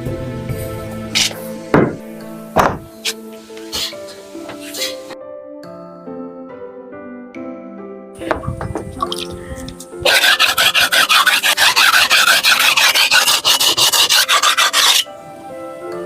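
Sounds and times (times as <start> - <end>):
background music: 0.0 - 16.0
hand rasp scraping wood: 10.0 - 15.1.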